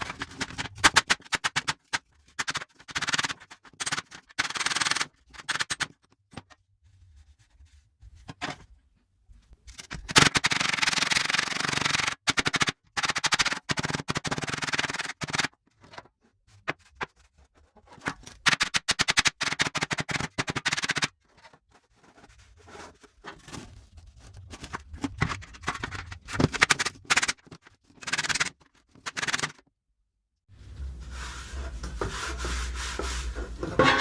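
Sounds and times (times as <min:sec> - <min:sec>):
scraping rust off steel box: 0:30.6 - 0:34.0.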